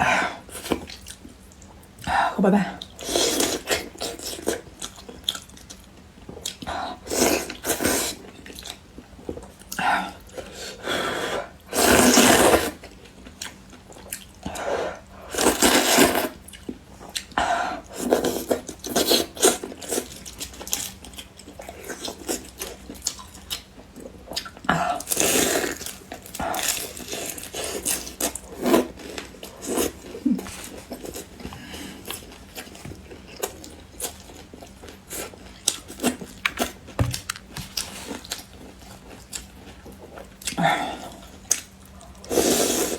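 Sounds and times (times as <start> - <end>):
chewing and biting food: 2.8 - 6.7, 12.8 - 14.6, 18.1 - 42.3.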